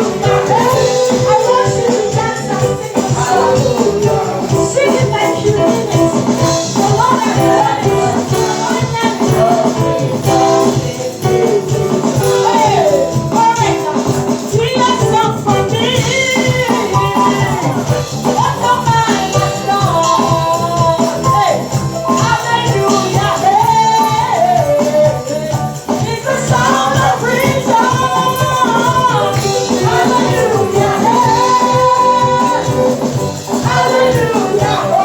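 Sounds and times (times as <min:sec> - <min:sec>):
singers singing: 0:00.0 - 0:13.8, 0:14.5 - 0:35.0
band playing steady beat: 0:00.0 - 0:35.0
shaker rattling: 0:00.0 - 0:35.0.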